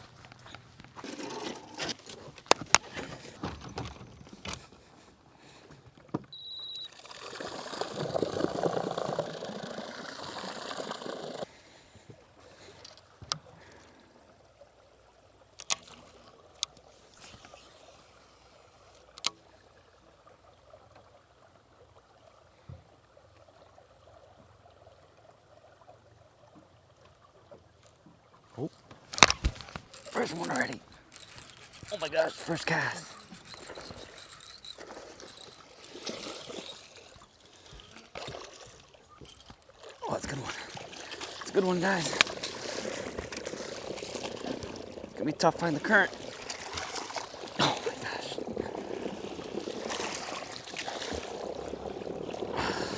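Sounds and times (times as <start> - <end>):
water sloshing around boat: 0.0 - 52.9
sharp clicks and knocks: 1.8 - 4.7
short high beep: 6.3 - 7.0
rush of water: 6.4 - 11.6, 28.5 - 52.9.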